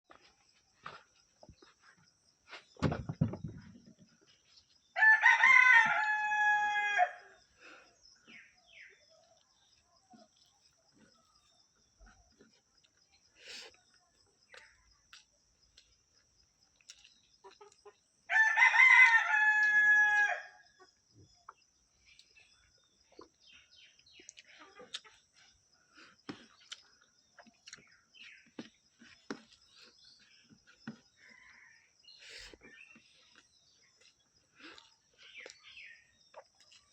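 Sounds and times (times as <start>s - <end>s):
rooster crowing: 5.0s - 7.4s, 18.3s - 20.6s.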